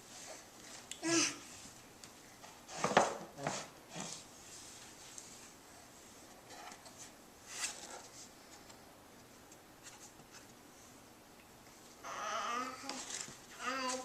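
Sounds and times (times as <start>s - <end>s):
paper rustling and scraping: 6.5s - 8.3s.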